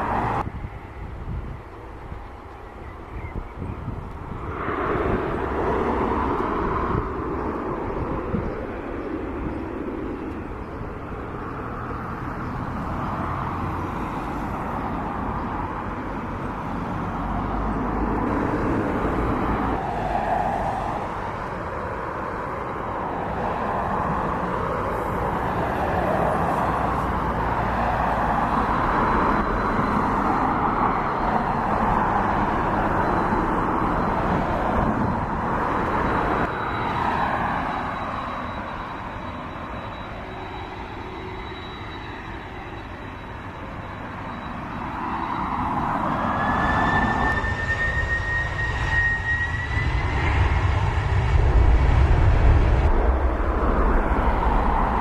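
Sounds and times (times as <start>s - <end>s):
jet engines roaring: 0.0s - 55.0s
thin high whine: 13.2s - 55.0s.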